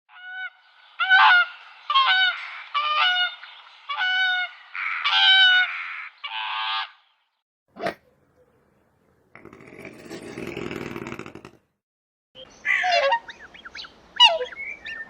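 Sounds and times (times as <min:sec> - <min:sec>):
swan honking: 0:12.7 - 0:14.6.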